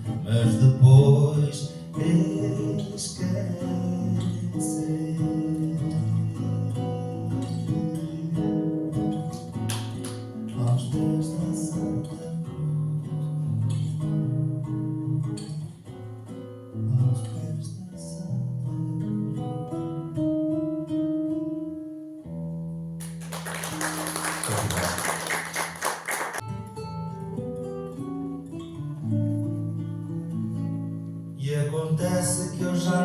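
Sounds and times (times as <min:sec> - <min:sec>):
acoustic guitar plucked melody: 0:00.0 - 0:24.8, 0:26.3 - 0:33.0.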